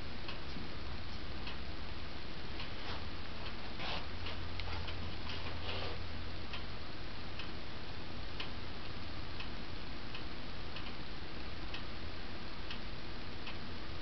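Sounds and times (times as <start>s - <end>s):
faint tick: 10.1s - 11.0s.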